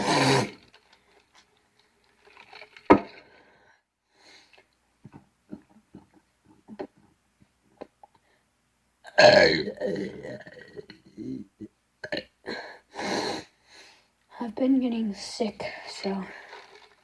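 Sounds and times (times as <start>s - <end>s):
burp: 0.0s - 0.8s, 9.1s - 12.4s.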